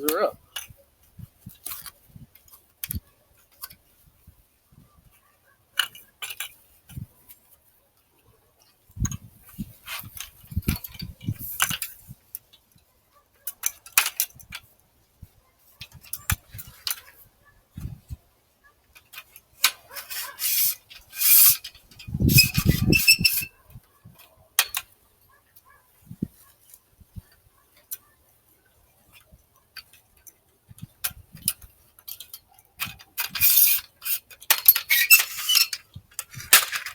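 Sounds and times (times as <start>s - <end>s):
tripod legs clicking and rattling: 0.0s - 4.1s, 5.7s - 7.6s, 8.6s - 14.7s, 18.9s - 28.2s, 29.0s - 36.9s
rustling and scraping: 0.1s - 18.2s, 18.8s - 36.9s.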